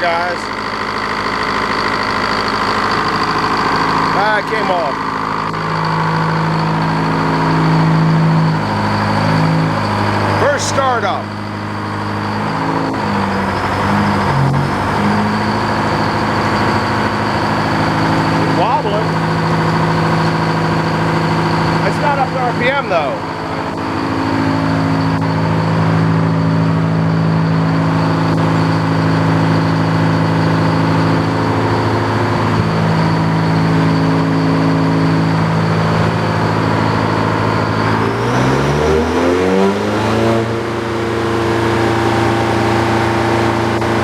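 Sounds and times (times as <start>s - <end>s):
diesel engine running sawmill: 0.0s - 44.0s
circular saw blade spinning: 32.6s - 44.0s.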